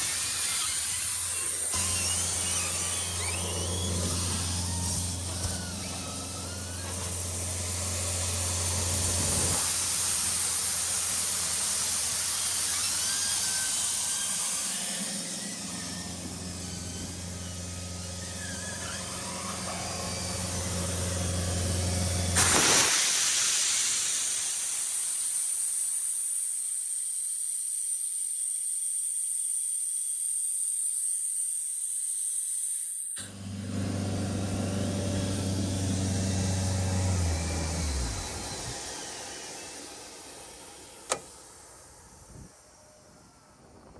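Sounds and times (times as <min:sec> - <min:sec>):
compressor air hiss: 0:00.0 - 0:18.0, 0:19.1 - 0:33.2, 0:35.2 - 0:42.6
diesel compressor engine hum: 0:01.0 - 0:22.4, 0:33.2 - 0:42.7.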